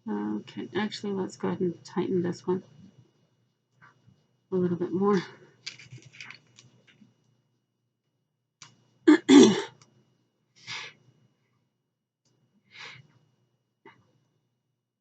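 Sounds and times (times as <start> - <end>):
person sneezing or coughing: 9.1 - 9.8.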